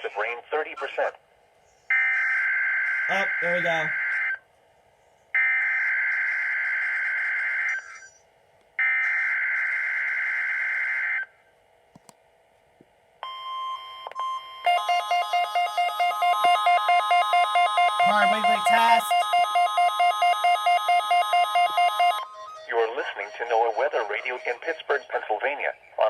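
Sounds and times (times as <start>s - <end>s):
rapid electronic beeping: 14.7s - 22.2s.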